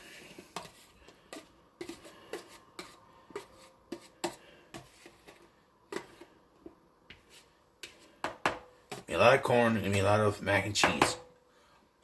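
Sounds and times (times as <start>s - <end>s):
spoon scraping plastic tray: 0.0s - 6.4s.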